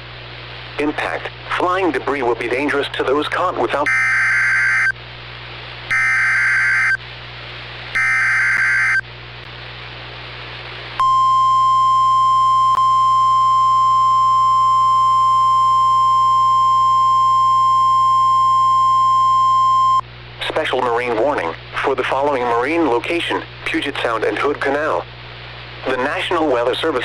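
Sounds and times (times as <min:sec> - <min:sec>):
radio hiss: 0:00.8 - 0:03.9, 0:20.4 - 0:25.1, 0:25.8 - 0:27.0
warbling data bursts: 0:03.8 - 0:04.9, 0:05.9 - 0:07.0, 0:08.0 - 0:09.0
steady attention tone: 0:03.8 - 0:05.0, 0:05.9 - 0:07.0, 0:08.0 - 0:09.0.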